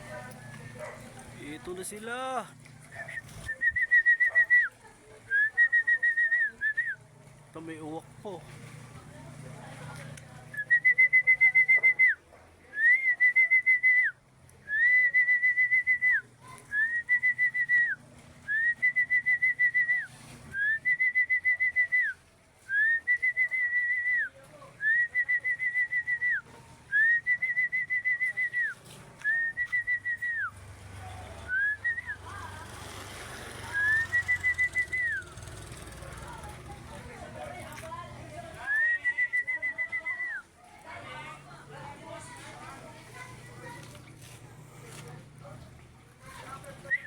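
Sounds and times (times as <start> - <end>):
trilling whistle blasts: 33.7 - 36.3.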